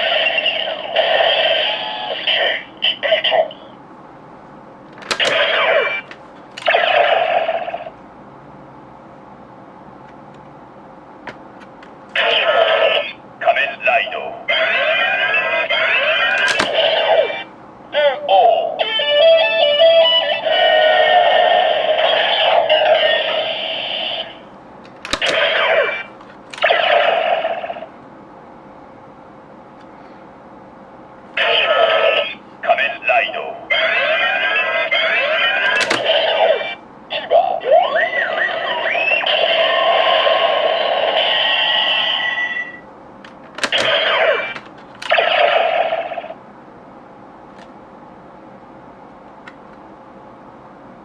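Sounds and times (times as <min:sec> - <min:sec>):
sharp plastic clicks: 0:04.9 - 0:06.8, 0:16.2 - 0:17.0, 0:24.8 - 0:26.7, 0:35.6 - 0:36.2, 0:43.2 - 0:45.2
sharp clicks: 0:16.3 - 0:16.9, 0:24.9 - 0:26.7.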